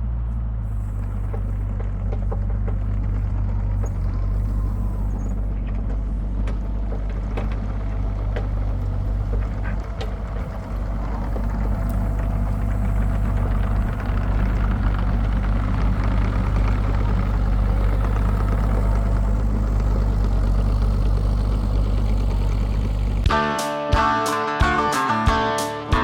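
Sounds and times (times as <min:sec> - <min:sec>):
engine idling: 0:00.0 - 0:26.0
guitar music: 0:23.2 - 0:26.0.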